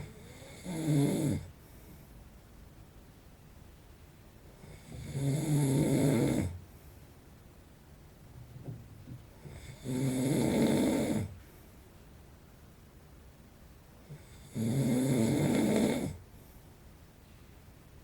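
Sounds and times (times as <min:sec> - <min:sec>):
man snoring loudly: 0:00.1 - 0:01.5, 0:04.7 - 0:06.6, 0:09.5 - 0:11.3, 0:14.2 - 0:16.2.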